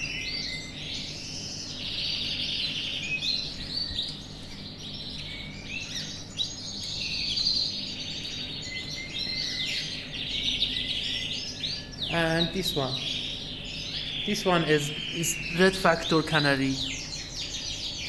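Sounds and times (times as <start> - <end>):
canaries trilling and chirping: 0.0 - 18.0.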